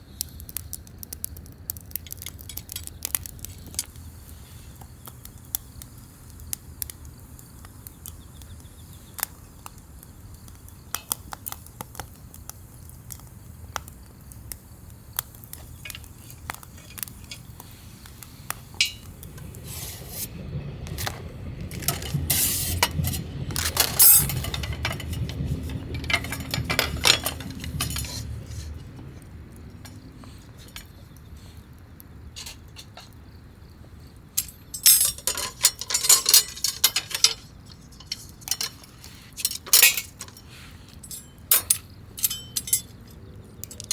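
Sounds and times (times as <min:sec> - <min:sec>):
low rumble of passing train: 0:12.6 - 0:43.9
cookware clinking: 0:18.8 - 0:19.5, 0:22.8 - 0:28.8, 0:34.4 - 0:43.0.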